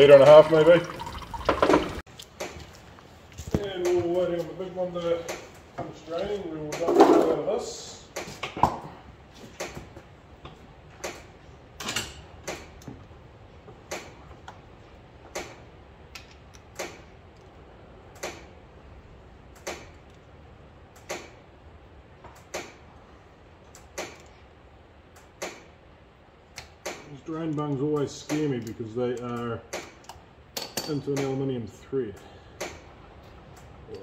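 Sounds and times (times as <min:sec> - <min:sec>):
oil dripping into container: 0:00.0 - 0:02.0.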